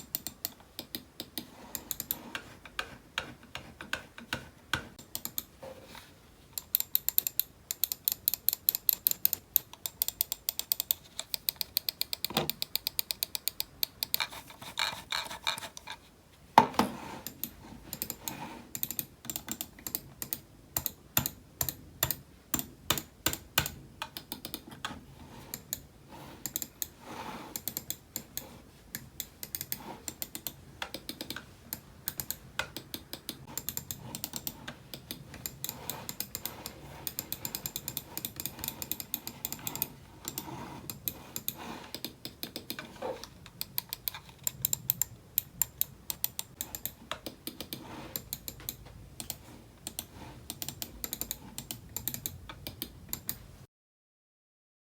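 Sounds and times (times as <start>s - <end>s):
typing on a keyboard: 5.0s - 5.6s, 6.6s - 15.6s, 17.3s - 24.9s, 27.6s - 28.4s, 29.0s - 53.5s.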